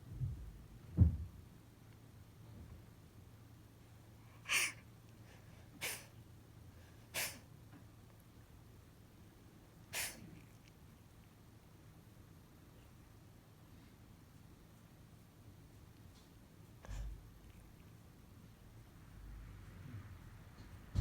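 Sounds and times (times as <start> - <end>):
cat sneezing: 4.4 - 4.8, 5.8 - 6.2, 7.1 - 7.5, 9.9 - 10.6.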